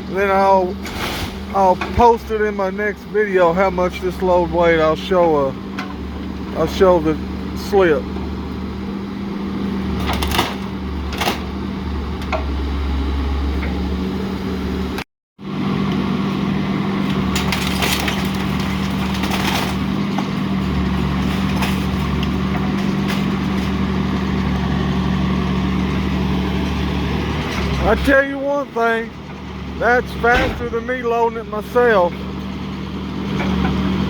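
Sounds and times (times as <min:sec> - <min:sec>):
engine humming: 0:00.0 - 0:34.0.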